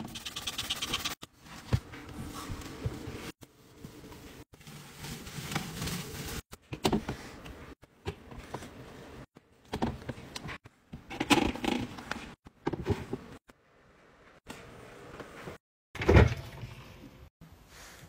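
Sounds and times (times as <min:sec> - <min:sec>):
rustling and scraping: 0:00.8 - 0:07.3.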